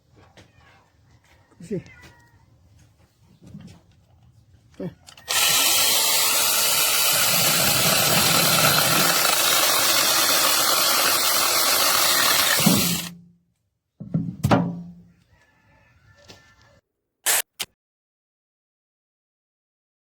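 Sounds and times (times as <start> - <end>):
mini chainsaw running: 5.1 - 13.1.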